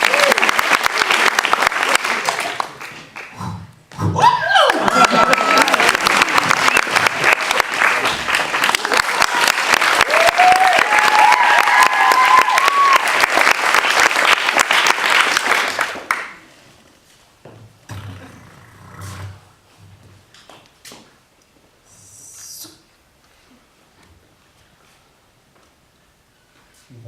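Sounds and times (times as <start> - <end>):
cheers: 0.0 - 0.9, 4.2 - 7.4, 8.7 - 13.6
audience clapping: 0.0 - 3.4, 4.5 - 16.6.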